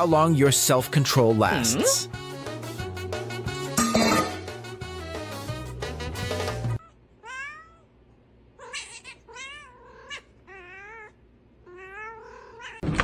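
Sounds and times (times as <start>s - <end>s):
background music: 0.0s - 6.8s
cat meowing: 6.8s - 7.9s, 8.6s - 12.8s.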